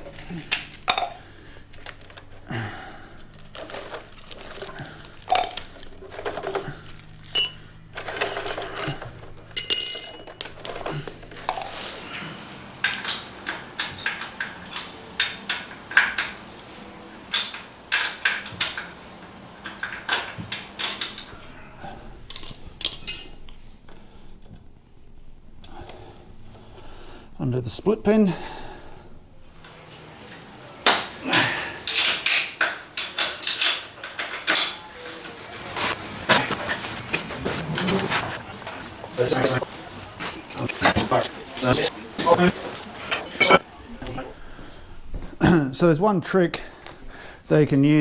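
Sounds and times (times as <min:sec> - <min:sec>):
metal hand tools clanking: 0:11.5 - 0:21.5, 0:29.6 - 0:44.4.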